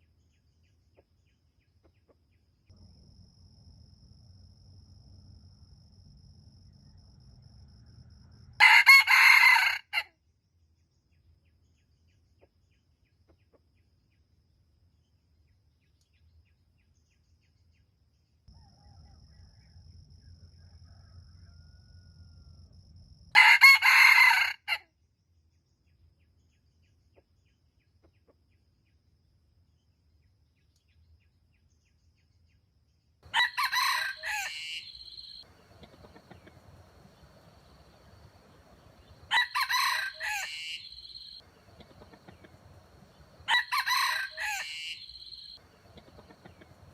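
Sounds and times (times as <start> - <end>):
rooster crowing: 8.6 - 10.1, 18.5 - 19.9, 20.5 - 22.5, 23.3 - 24.8, 33.3 - 46.9.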